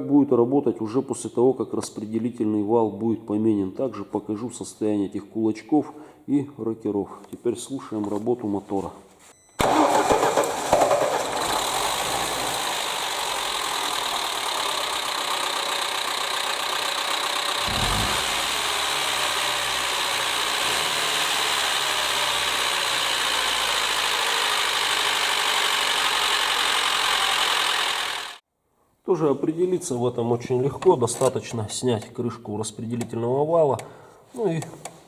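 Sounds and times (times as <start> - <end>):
car engine idling: 9.7 - 28.4.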